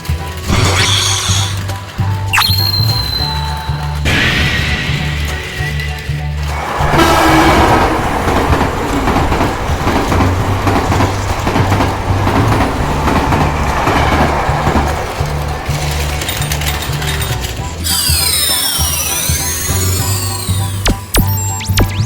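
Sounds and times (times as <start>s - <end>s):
wheels clattering on plastic track: 0.0s - 0.5s, 1.5s - 21.1s
toy train motor whir: 15.8s - 21.5s
background music with bass line: 17.5s - 22.0s.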